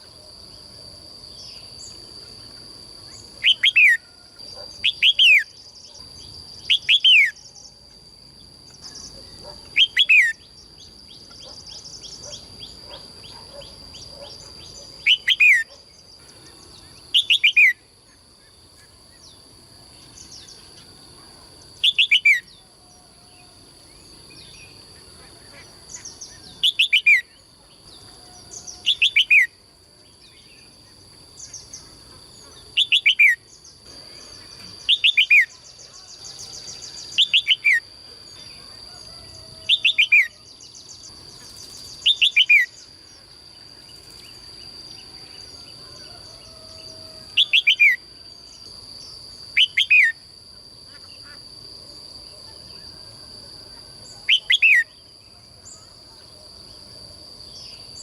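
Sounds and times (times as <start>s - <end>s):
steady high-pitched hum: 0.0s - 58.0s
songbird whistled calls: 3.4s - 4.1s, 6.6s - 7.5s, 9.7s - 10.5s, 15.0s - 15.7s, 21.8s - 22.5s, 28.5s - 29.6s, 34.9s - 37.8s, 42.0s - 42.8s.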